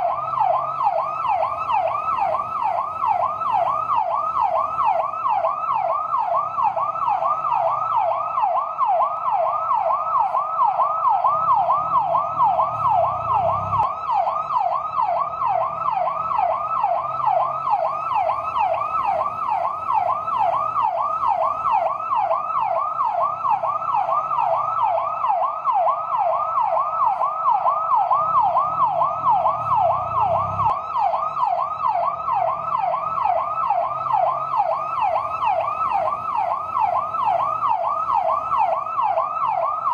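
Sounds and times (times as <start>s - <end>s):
fire truck yelp siren: 0.0s - 39.9s.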